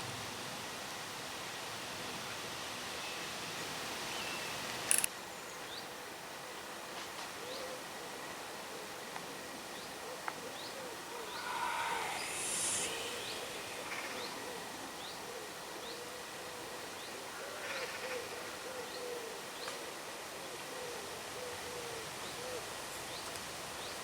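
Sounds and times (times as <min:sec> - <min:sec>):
single click: 0:04.9 - 0:05.1
low arched animal calls: 0:10.8 - 0:16.7
faint high chirps: 0:11.2 - 0:16.0.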